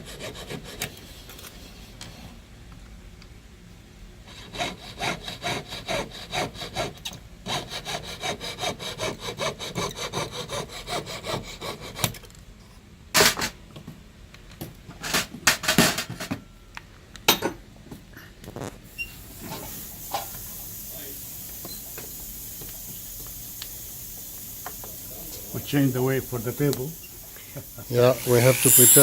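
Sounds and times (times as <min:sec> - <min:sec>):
hand saw cutting metal: 0:00.0 - 0:00.9, 0:04.3 - 0:12.1, 0:28.0 - 0:29.0.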